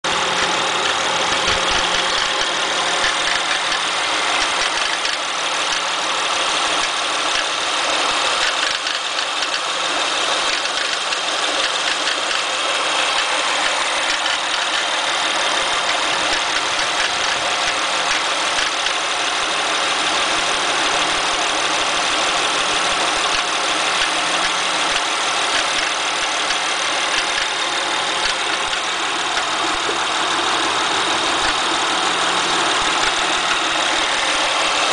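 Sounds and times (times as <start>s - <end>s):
car engine idling: 0.0s - 34.9s
strange noise from engine bay: 0.1s - 19.5s.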